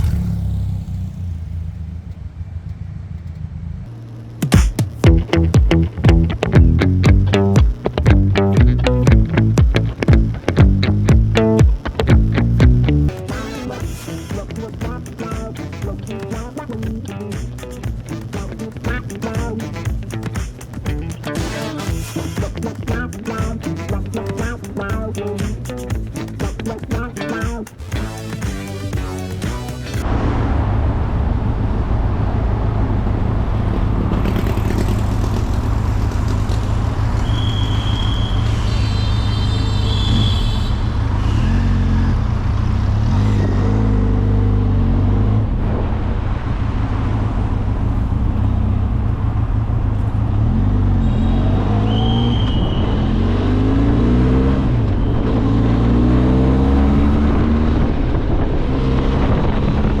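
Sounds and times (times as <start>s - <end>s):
motorcycle engine accelerating: 0.0s - 37.4s, 41.0s - 60.0s.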